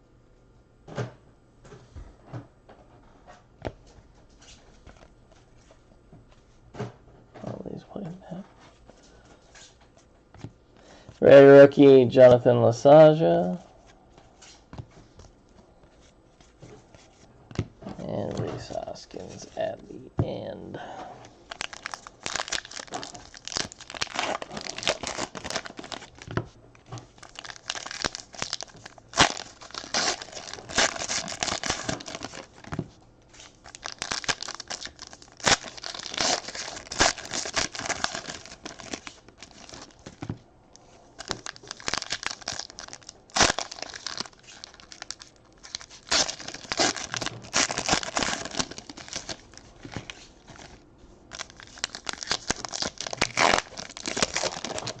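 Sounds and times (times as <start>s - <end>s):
plastic wrappers tearing and crinkling: 21.4s - 55.0s.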